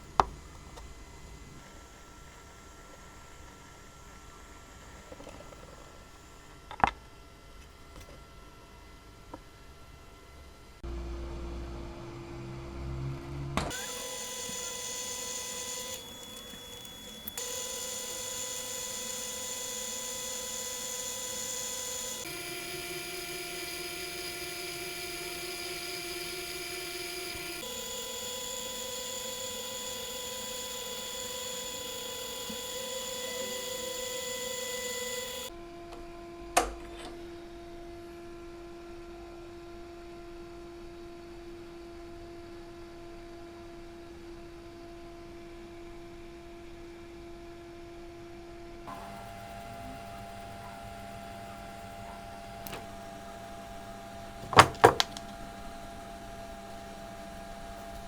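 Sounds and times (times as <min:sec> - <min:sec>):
radiator fan motor whining: 0:13.7 - 0:35.5, 0:48.9 - 0:58.0.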